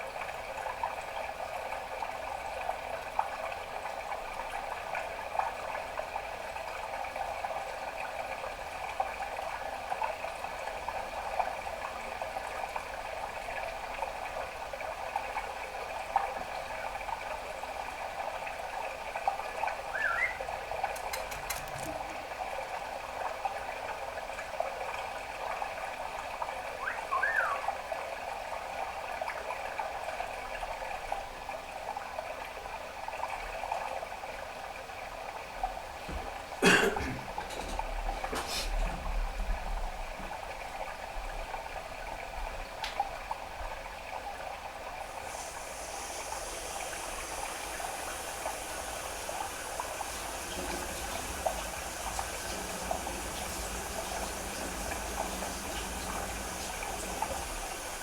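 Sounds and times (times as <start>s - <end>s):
bird chirps rising: 19.9s - 20.5s, 26.8s - 27.7s
budgerigar chattering: 20.0s - 20.4s
sharp click: 20.9s - 22.0s.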